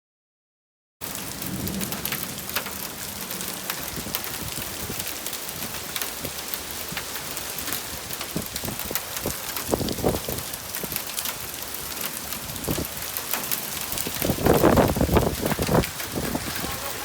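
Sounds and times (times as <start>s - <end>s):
hail and rain hissing: 1.0s - 17.0s
hail pellets ticking on surfaces: 1.0s - 17.0s.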